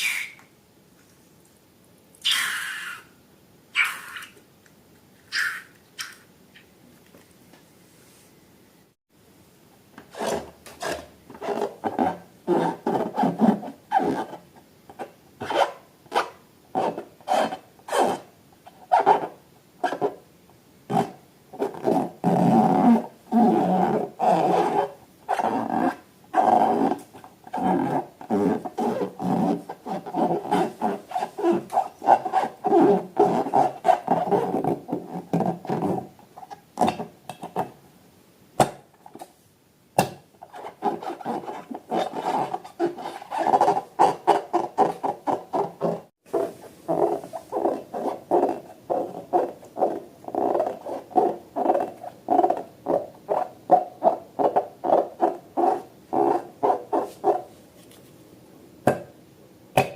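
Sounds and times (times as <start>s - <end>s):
rubber balloons squeaking: 10.2s - 14.4s, 20.9s - 36.1s, 40.4s - 57.5s.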